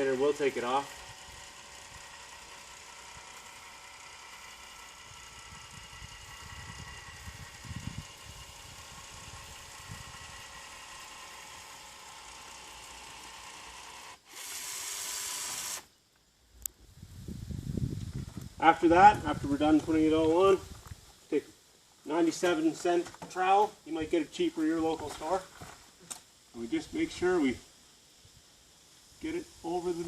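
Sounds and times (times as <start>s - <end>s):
small power tool motor whining: 0.0s - 16.0s
loud hiss: 16.8s - 30.0s.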